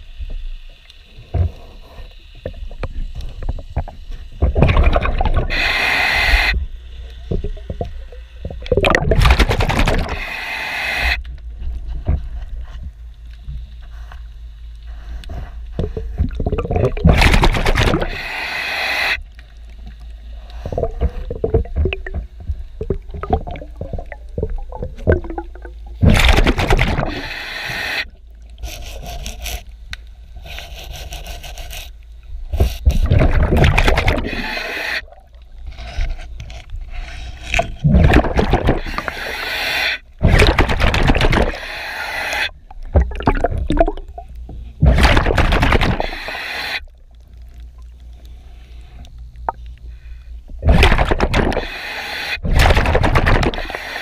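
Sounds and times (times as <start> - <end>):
scrubbing boat hull underwater: 1.2 - 5.7, 6.4 - 10.3, 14.9 - 18.2, 19.6 - 29.8, 32.3 - 41.6, 42.4 - 51.7, 52.4 - 54.0
diver's exhaled bubbles: 3.6 - 6.6, 7.3 - 10.3, 15.8 - 18.3, 20.6 - 28.0, 32.9 - 35.3, 37.6 - 39.5, 40.2 - 41.7, 42.4 - 46.8, 50.6 - 51.7, 52.4 - 54.0.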